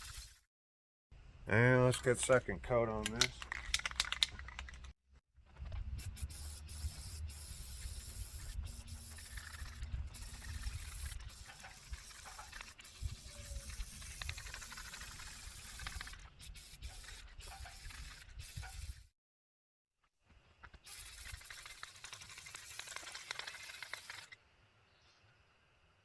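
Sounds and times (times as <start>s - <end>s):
aerosol spray hissing: 6.2s - 19.0s, 20.8s - 24.4s.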